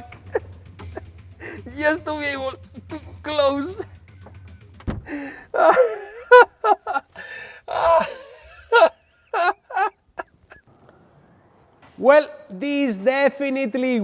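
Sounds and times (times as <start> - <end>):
man gasping and breathing heavily: 0.0 - 1.7, 5.0 - 6.0, 7.1 - 8.4
strained laugh-like vocal sounds: 0.0 - 2.2, 5.1 - 10.6.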